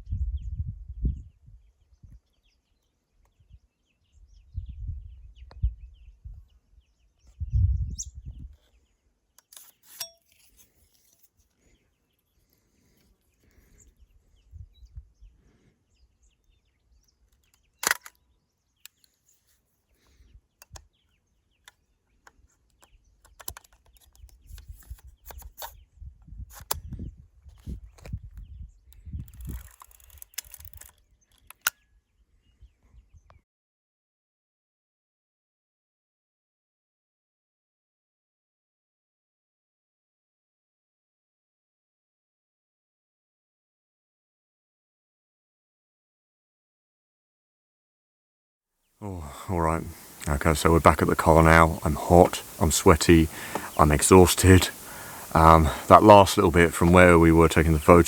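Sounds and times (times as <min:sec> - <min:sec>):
low rumbles on microphone: 0:00.0 - 0:01.4
small birds chirping: 0:15.9 - 0:25.9, 0:49.0 - 0:58.0.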